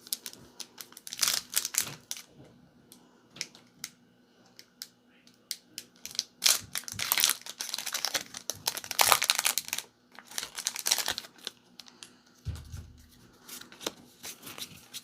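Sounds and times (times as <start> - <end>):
foil wrapper tearing and crinkling: 0.0 - 2.3, 6.0 - 12.1.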